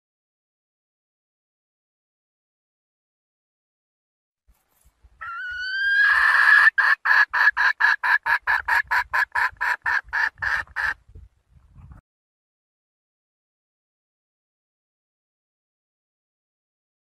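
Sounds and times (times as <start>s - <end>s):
hen calling with rising note: 5.2s - 9.5s
hen clucking rapidly: 5.2s - 11.0s.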